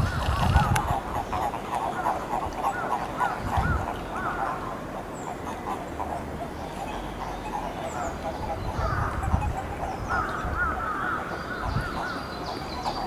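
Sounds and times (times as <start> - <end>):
toads croaking: 0.0 - 4.6.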